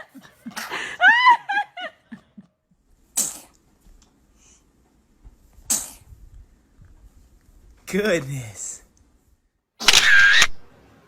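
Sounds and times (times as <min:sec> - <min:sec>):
baby sneezing: 0:03.2 - 0:03.6, 0:05.7 - 0:06.1.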